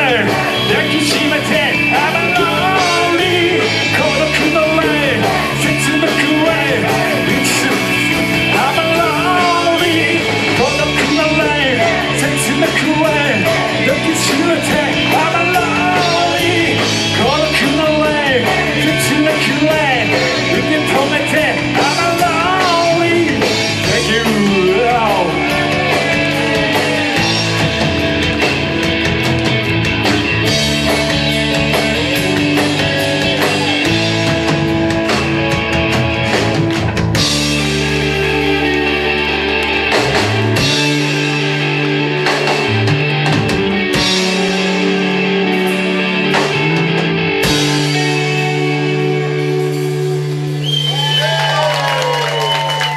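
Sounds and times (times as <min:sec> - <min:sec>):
lead melody with pitch bends: 0:00.0 - 0:50.6
rock band playing live: 0:00.0 - 0:52.9.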